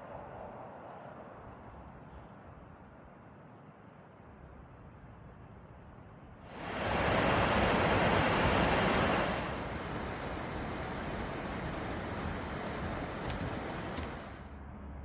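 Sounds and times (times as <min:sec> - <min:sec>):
creek water rushing: 0:06.5 - 0:14.4.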